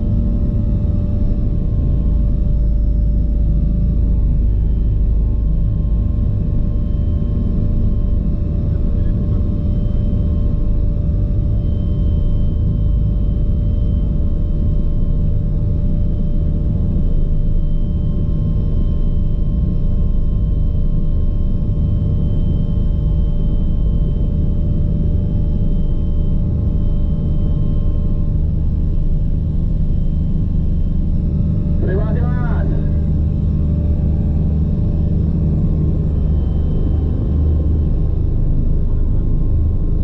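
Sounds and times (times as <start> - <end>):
helicopter rotor and engine rumble: 0.0 - 40.0
steady whining tones: 21.7 - 40.0.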